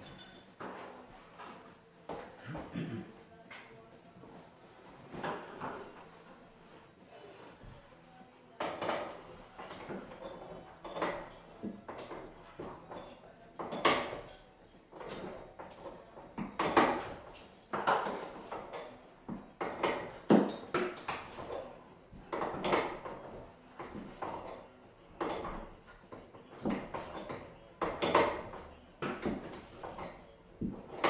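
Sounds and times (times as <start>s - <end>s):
knocks and clatter on metal parts: 8.6s - 31.0s.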